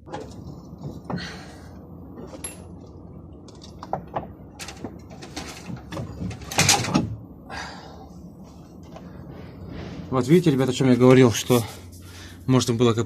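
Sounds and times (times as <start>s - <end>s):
metal clunks and scraping: 3.8s - 7.2s.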